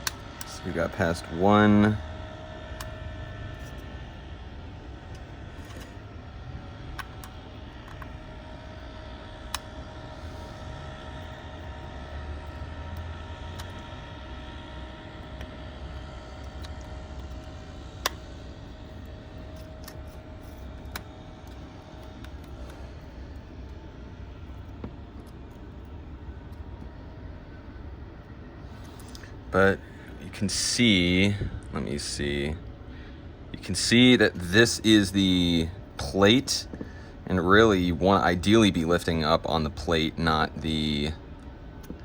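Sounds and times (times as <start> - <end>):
fan hum: 0.0 - 42.0.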